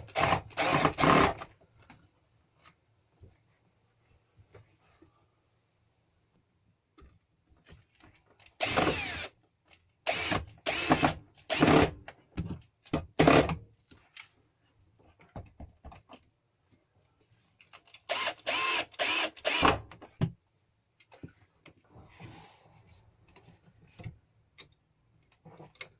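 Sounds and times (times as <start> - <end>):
power drill bursts: 0.2 - 1.4, 8.6 - 9.3, 10.1 - 11.9, 18.1 - 19.8.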